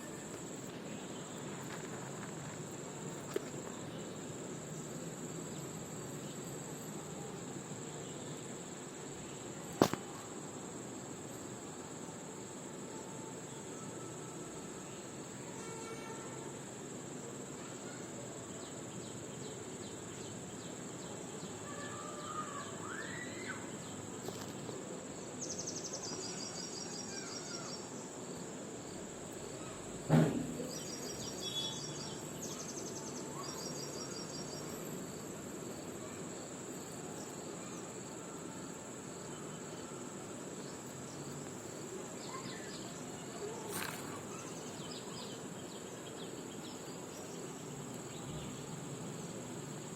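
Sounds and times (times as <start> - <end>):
insect drone: 0.0 - 49.9
insect trilling: 25.4 - 49.9
sharp knock: 30.1 - 30.7.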